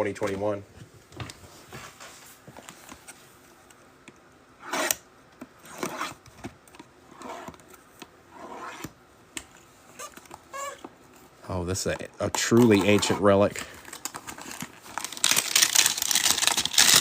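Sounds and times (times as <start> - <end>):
cardboard and wrapper tearing: 13.8 - 17.0.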